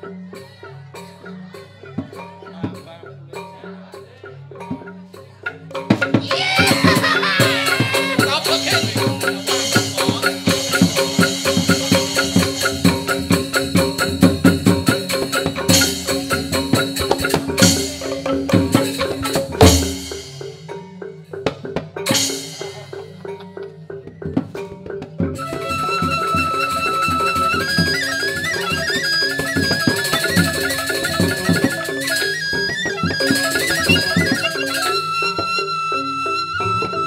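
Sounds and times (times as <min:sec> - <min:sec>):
bamboo xylophones and drums: 0:00.0 - 0:37.0
high bamboo flute melody: 0:06.1 - 0:20.2, 0:25.2 - 0:37.0.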